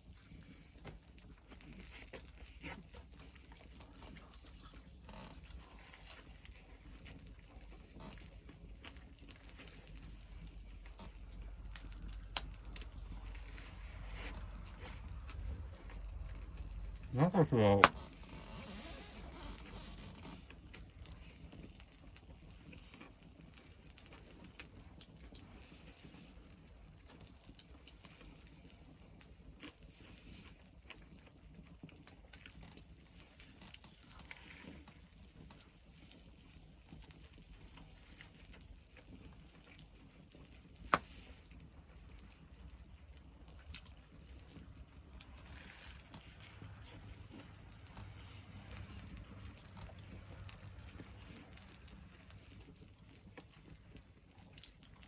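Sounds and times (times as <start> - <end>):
fire popping: 0.0 - 55.0
wood fire crackling: 0.0 - 55.0.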